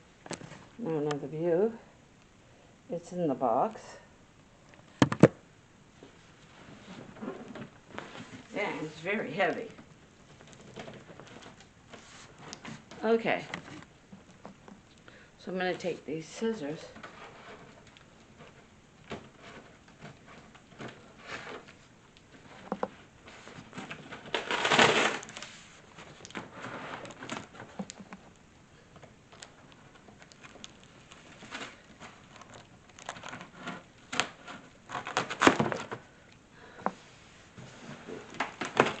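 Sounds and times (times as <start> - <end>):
cardboard rustling: 6.0 - 14.8, 16.9 - 36.2, 37.4 - 39.0.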